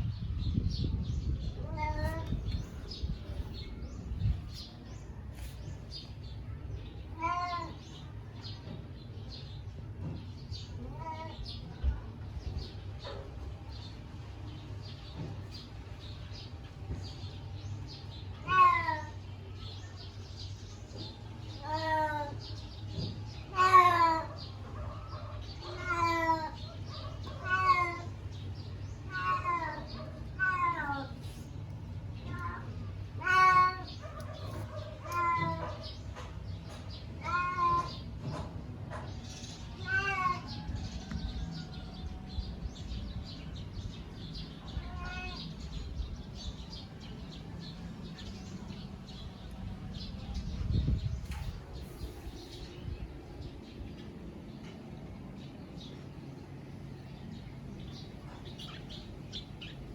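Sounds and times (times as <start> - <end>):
cat meowing: 1.6 - 2.4, 7.2 - 7.9, 18.4 - 19.2, 25.6 - 28.2, 29.1 - 31.2, 32.2 - 34.1, 35.0 - 35.9, 37.2 - 38.0, 39.8 - 40.8, 44.6 - 45.9.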